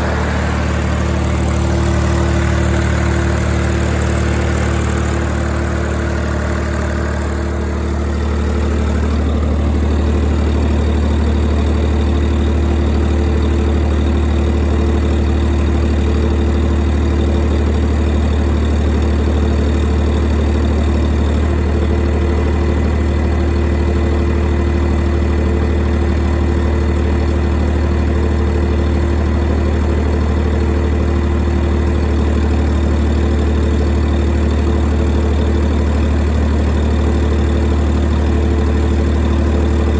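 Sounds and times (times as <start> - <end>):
diesel generator droning: 0.0 - 39.9.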